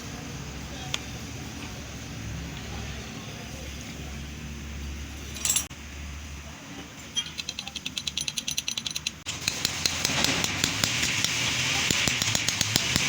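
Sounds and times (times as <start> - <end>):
metal tools clinking: 5.2 - 5.7, 7.1 - 9.3
metallic ticks: 7.2 - 10.1.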